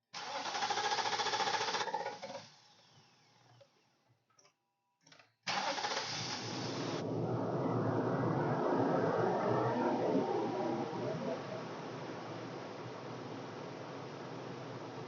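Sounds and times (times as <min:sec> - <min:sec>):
car engine starting and running: 0:00.2 - 0:03.2, 0:05.5 - 0:14.8
starter motor cranking: 0:00.2 - 0:03.8.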